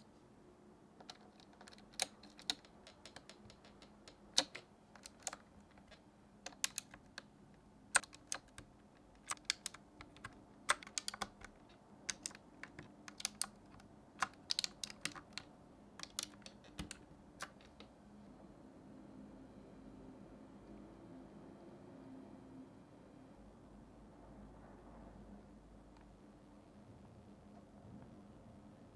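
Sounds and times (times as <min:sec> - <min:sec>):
plastic keyboard keycap clicks: 0:01.0 - 0:07.3, 0:08.0 - 0:15.4, 0:16.0 - 0:17.8.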